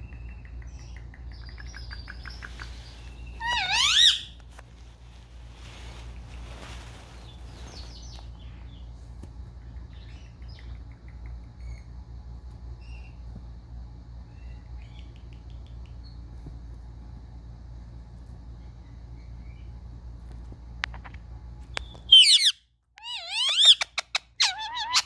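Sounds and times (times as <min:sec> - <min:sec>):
steady low hum: 0:00.0 - 0:22.1
parakeet chirps and squeaks: 0:00.8 - 0:04.4, 0:21.8 - 0:25.0
rustling: 0:02.4 - 0:08.4.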